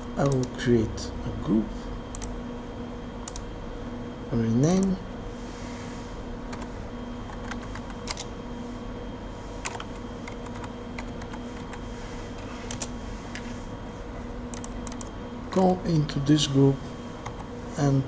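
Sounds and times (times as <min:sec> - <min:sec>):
faint electrical hum: 0:00.0 - 0:18.0
computer keyboard typing: 0:00.2 - 0:00.6, 0:02.1 - 0:02.4, 0:03.2 - 0:03.5, 0:07.3 - 0:08.3, 0:09.6 - 0:11.8, 0:12.7 - 0:13.0, 0:14.5 - 0:15.1.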